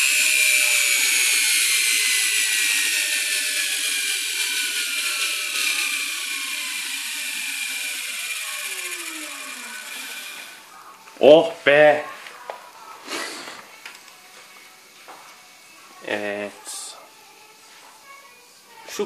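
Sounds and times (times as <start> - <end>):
electric motor spinning down: 0.0 - 11.1.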